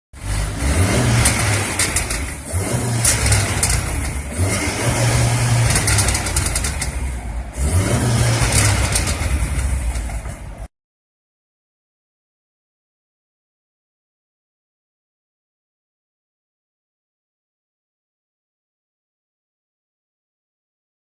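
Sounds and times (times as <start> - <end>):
car engine revving: 0.2 - 10.7
exhaust popping and crackling: 0.2 - 10.7.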